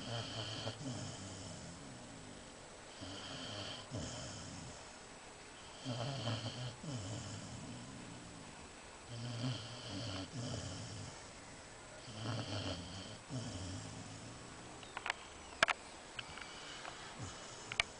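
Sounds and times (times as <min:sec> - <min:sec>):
dog snoring: 0:00.0 - 0:05.0, 0:05.6 - 0:08.5, 0:09.1 - 0:11.3, 0:12.0 - 0:14.6, 0:16.2 - 0:17.9.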